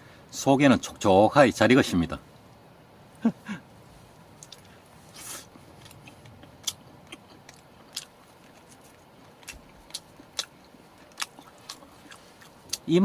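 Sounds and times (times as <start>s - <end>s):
person chewing with mouth clicks: 4.4s - 12.9s.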